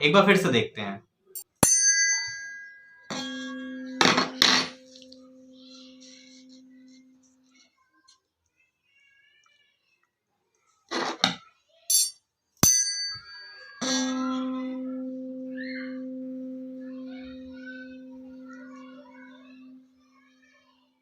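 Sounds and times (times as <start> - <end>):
metallic clink: 1.4 - 5.1, 11.9 - 14.1
tuning fork ringing: 1.6 - 7.4, 11.9 - 20.1.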